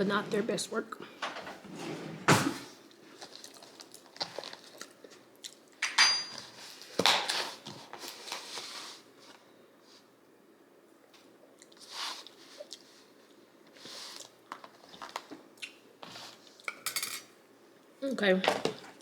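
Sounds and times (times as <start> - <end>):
packaging crinkling and rustling: 3.0 - 5.2, 14.2 - 15.4.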